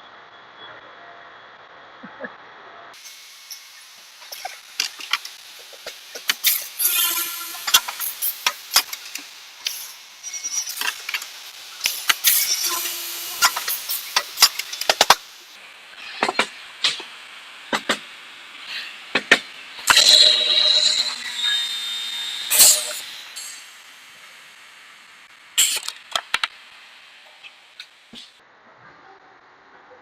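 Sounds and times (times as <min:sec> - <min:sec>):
drill boring wood: 0:04.5 - 0:08.9, 0:12.1 - 0:14.9.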